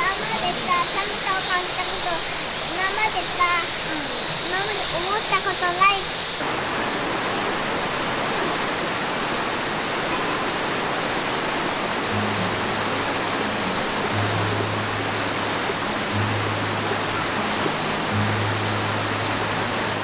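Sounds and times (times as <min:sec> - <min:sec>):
steady rushing noise: 0:00.0 - 0:20.0
low background music notes: 0:12.0 - 0:20.0.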